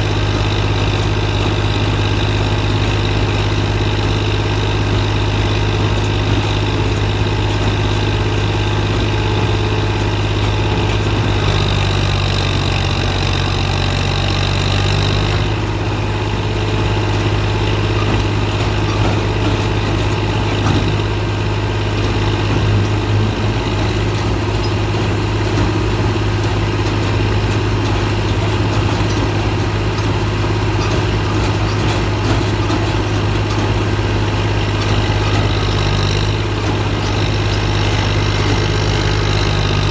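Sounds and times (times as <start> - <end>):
baling machine humming: 0.0 - 39.9
higher machine whine: 0.0 - 39.9.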